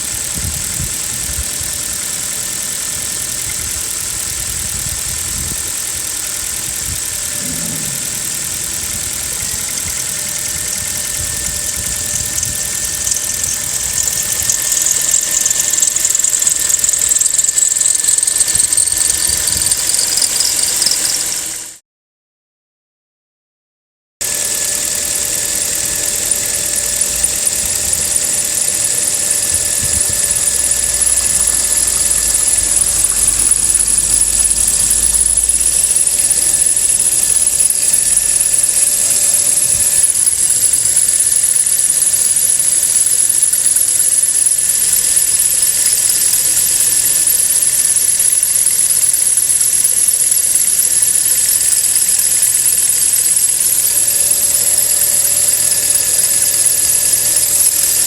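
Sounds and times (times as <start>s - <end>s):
car engine idling: 0.0s - 18.0s, 24.4s - 42.9s
belt squeal whistle: 4.9s - 21.8s, 25.1s - 58.0s.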